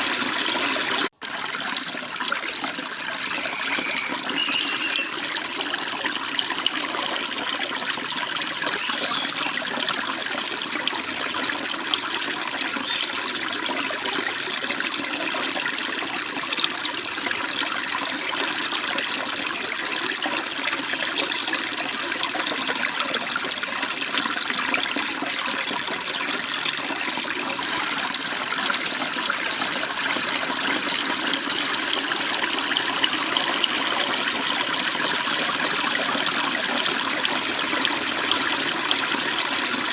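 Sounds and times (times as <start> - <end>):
stream water babbling: 0.0 - 39.9.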